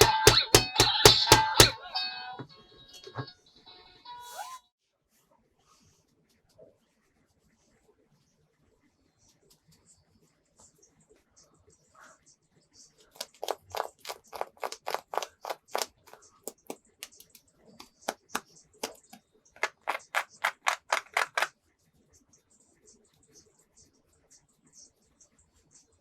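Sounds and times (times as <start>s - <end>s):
sharp taps on plastic toy: 0.0s - 1.8s, 13.2s - 21.5s.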